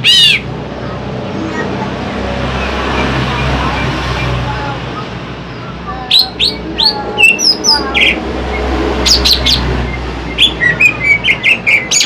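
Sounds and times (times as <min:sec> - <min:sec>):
bird singing: 0:02.6 - 0:12.0.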